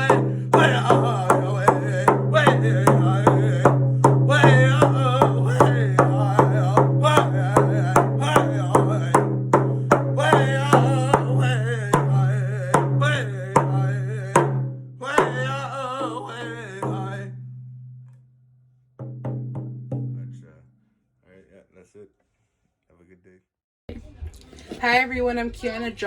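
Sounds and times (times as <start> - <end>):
person singing: 0.0 - 17.3
steady drum beat: 0.0 - 17.3, 19.0 - 20.4.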